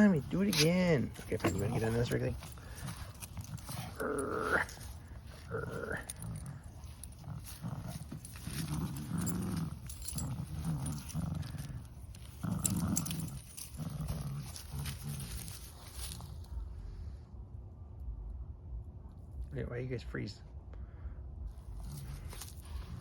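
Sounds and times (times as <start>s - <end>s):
dogs play-growling: 0.0s - 16.5s, 21.6s - 23.0s.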